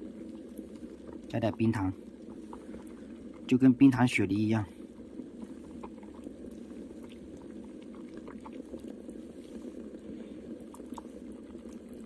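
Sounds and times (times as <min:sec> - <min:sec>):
water boiling in a pot: 0:00.0 - 0:12.0.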